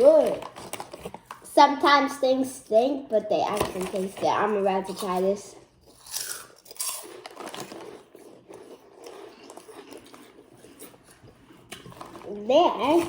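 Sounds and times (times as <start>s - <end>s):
chewing crisp chips: 4.8s - 12.3s.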